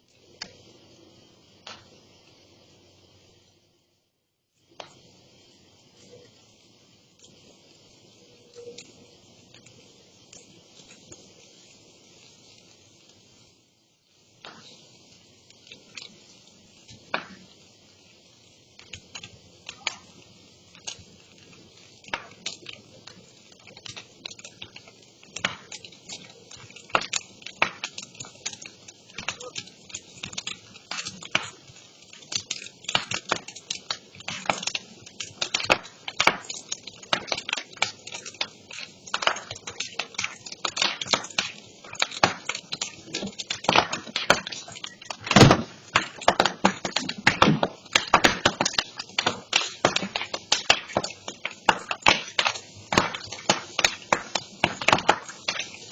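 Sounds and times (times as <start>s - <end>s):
brush fire crackling and popping: 0.0s - 55.9s
loud crack: 23.6s - 55.9s.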